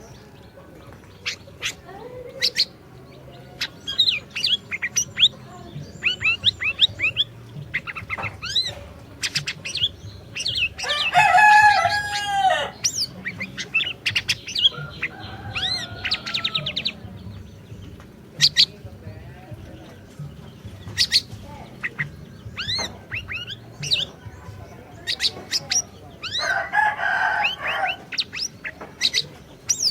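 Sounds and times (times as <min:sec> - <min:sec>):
songbird chirping and whistling: 0:00.0 - 0:29.9
harsh bird call: 0:03.5 - 0:17.4, 0:20.7 - 0:29.9.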